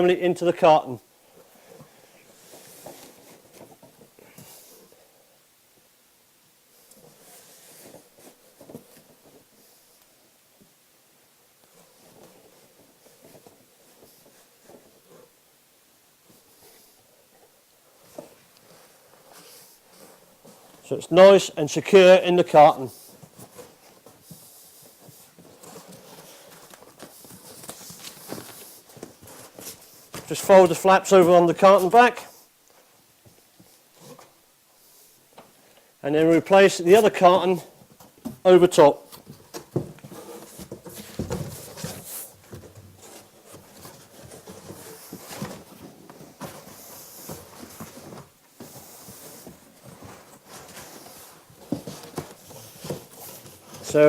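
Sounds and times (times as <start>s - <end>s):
cardboard and paper rustling: 11.7s - 15.4s, 16.2s - 20.8s, 22.8s - 32.1s, 39.0s - 54.0s
cardboard boxes scraping together: 39.4s - 54.0s.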